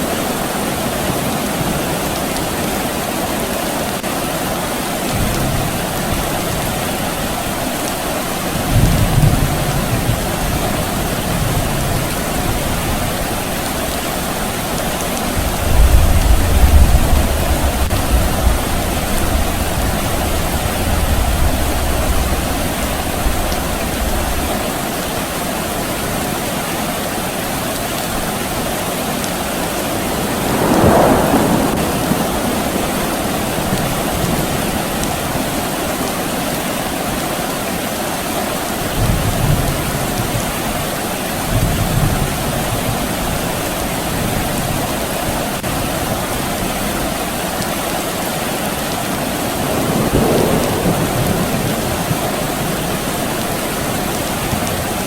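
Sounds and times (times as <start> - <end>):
steady rain falling: 0.0 - 55.0
distant thunder rumbling: 5.1 - 24.6, 27.5 - 36.1, 49.4 - 55.0.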